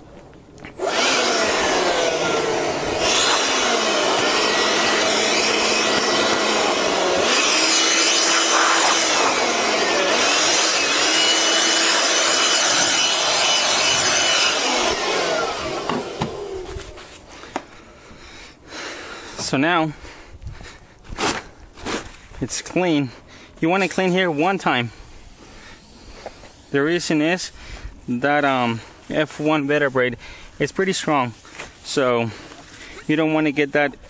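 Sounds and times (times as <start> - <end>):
power tool rasping on surface: 0.8 - 17.2.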